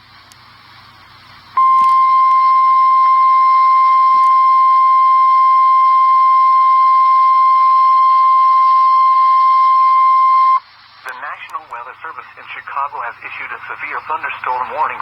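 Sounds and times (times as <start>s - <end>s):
steady warning alarm tone: 1.6s - 10.6s.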